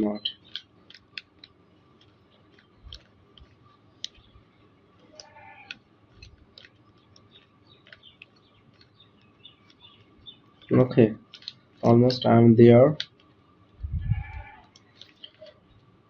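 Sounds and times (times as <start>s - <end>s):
plastic puzzle cube clicks: 11.2s - 11.6s.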